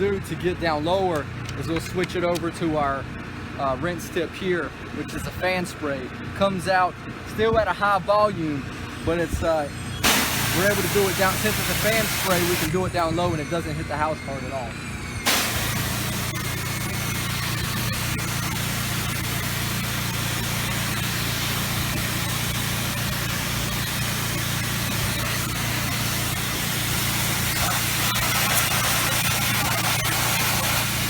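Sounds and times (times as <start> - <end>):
engine running: 0.0 - 31.0
pressure washer spray hissing: 10.0 - 13.8, 15.2 - 31.0.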